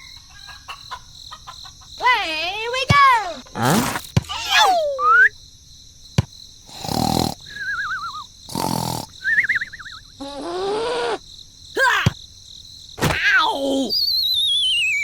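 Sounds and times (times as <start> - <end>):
pitched groan: 2.9 - 5.2, 11.8 - 12.2.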